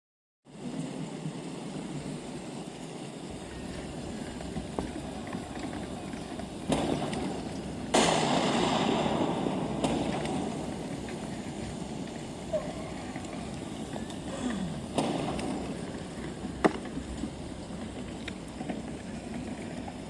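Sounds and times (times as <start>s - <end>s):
steady hiss: 0.5s - 20.0s
sudden bang: 7.9s - 10.8s
loud blast: 7.9s - 11.0s.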